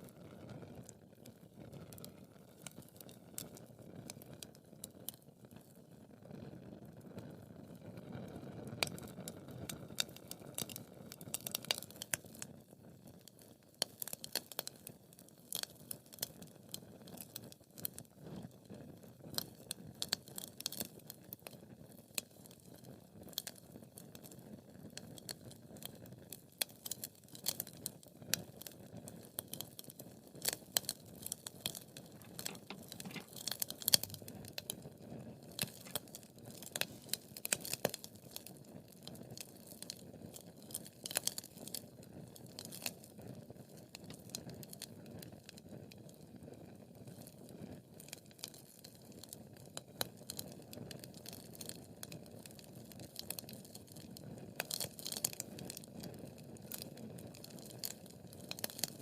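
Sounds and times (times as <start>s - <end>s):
rustle of flames: 0.0s - 59.0s
wood fire crackling: 8.8s - 12.5s, 13.2s - 17.9s, 28.4s - 46.2s, 48.0s - 59.0s.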